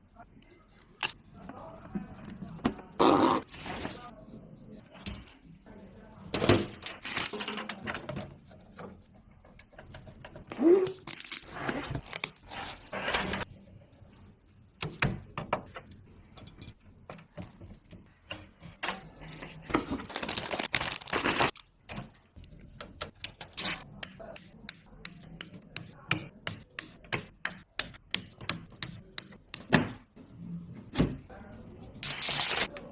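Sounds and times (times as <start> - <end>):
computer parts rustling and clacking: 6.3 - 13.5, 14.8 - 23.8.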